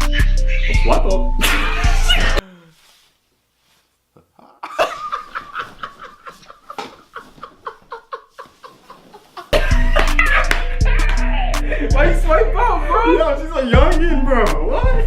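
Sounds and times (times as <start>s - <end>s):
person laughing: 0.0s - 2.4s, 4.6s - 13.3s.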